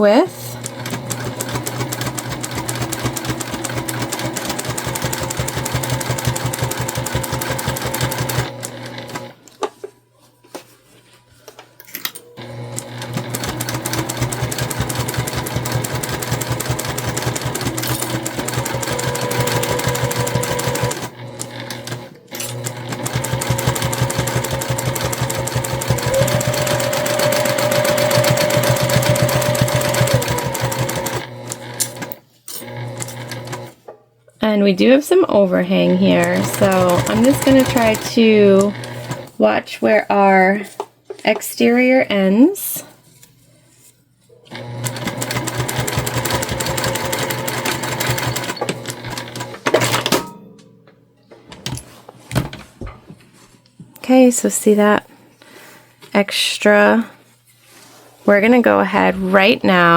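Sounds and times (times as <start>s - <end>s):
sewing machine stitching: 0.3s - 9.3s, 12.4s - 33.8s, 35.7s - 39.4s, 44.5s - 50.3s.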